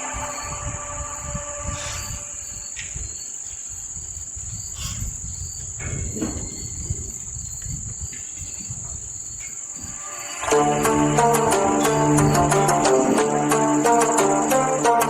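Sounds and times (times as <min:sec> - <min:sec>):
insects chirring: 0:00.0 - 0:15.0.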